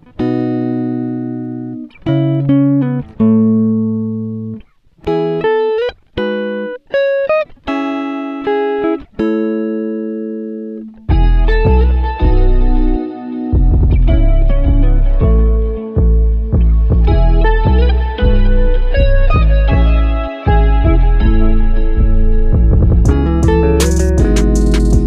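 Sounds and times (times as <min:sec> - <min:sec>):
plucked string chords: 0:07.7 - 0:25.0.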